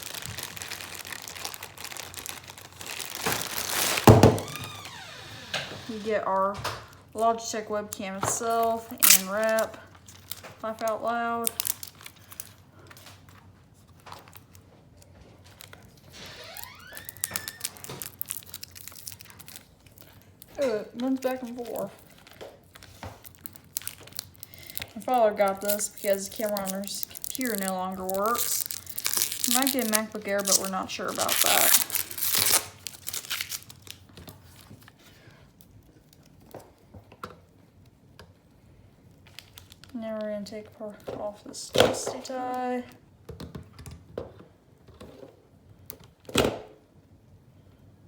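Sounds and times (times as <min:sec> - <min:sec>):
plastic packaging crinkling: 0:00.0 - 0:06.1, 0:08.4 - 0:36.5, 0:39.1 - 0:40.2.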